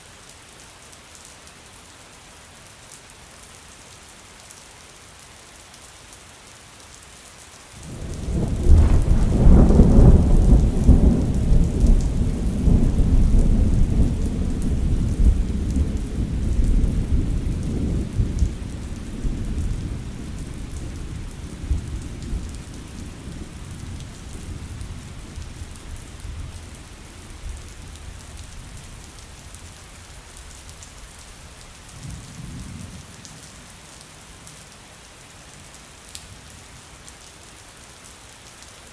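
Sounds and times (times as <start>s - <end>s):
steady rain hissing: 0.0s - 38.9s
thunder rumbling: 7.8s - 29.1s.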